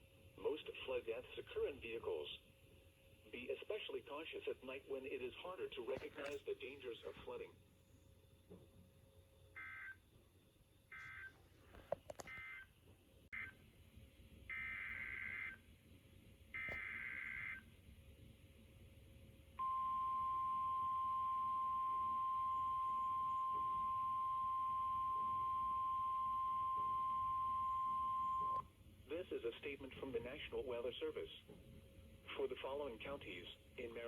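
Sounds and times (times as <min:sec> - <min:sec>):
steady weather radio alert tone: 0:16.6 - 0:17.6, 0:19.6 - 0:30.0.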